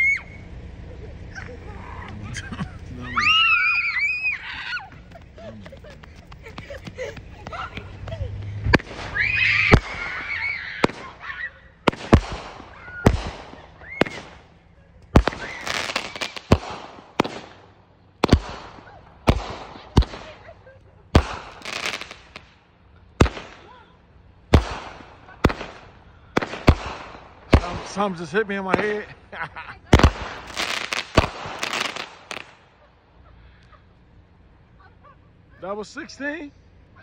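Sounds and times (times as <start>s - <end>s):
fireworks whistle: 0.0s - 0.5s, 8.7s - 14.5s, 15.2s - 17.5s
fireworks bangs: 0.0s - 34.7s
fireworks crackling and fizzing: 0.0s - 37.0s.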